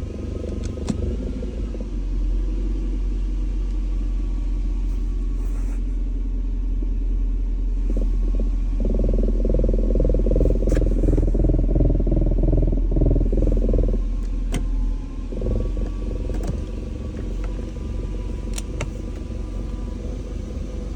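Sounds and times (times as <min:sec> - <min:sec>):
car engine rumbling: 0:00.0 - 0:20.9
rapid engine knocking: 0:07.8 - 0:14.6, 0:15.3 - 0:20.9.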